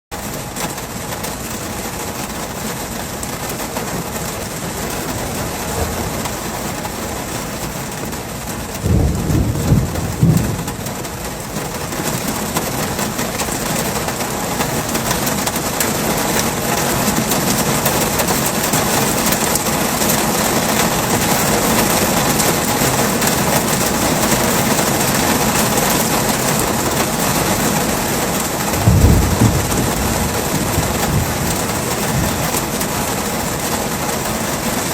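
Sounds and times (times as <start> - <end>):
heavy rain hissing: 0.2 - 34.9
low thunder rumbles: 5.1 - 7.4, 8.8 - 12.9, 28.6 - 34.0.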